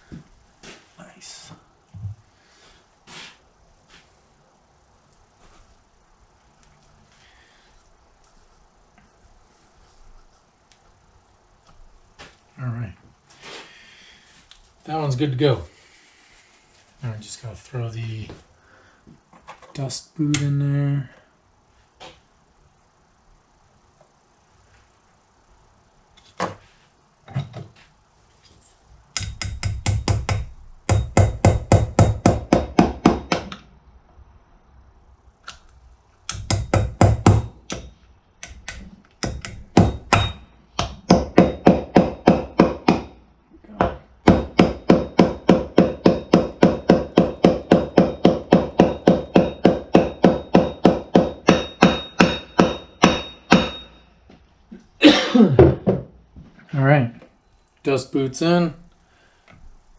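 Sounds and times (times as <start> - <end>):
hammer tapping on metal: 29.2 - 33.7, 36.3 - 43.2, 43.8 - 54.1.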